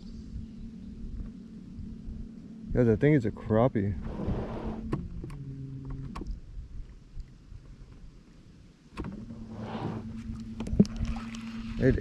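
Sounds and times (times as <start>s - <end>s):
low rumble: 0.0s - 8.2s
steady low hum: 0.0s - 12.0s.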